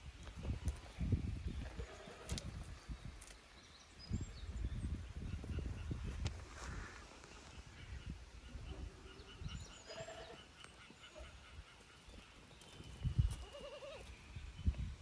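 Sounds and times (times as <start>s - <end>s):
young goats bleating: 9.8s - 10.5s, 13.3s - 14.2s.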